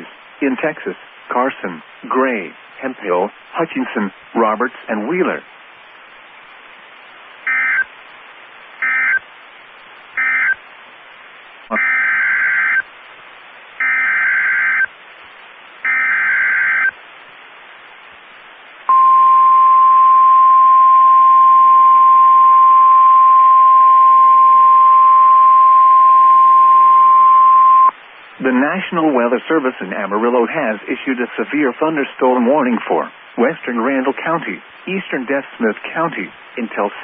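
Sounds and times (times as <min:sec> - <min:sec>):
buzzy data tone bursts: 0:07.4 - 0:07.9, 0:08.8 - 0:10.7, 0:11.7 - 0:12.9, 0:13.8 - 0:17.0
steady weather alarm tone: 0:07.4 - 0:07.9, 0:08.8 - 0:09.3, 0:10.0 - 0:10.6, 0:11.7 - 0:12.9, 0:13.8 - 0:15.0, 0:15.8 - 0:17.0, 0:18.9 - 0:27.9.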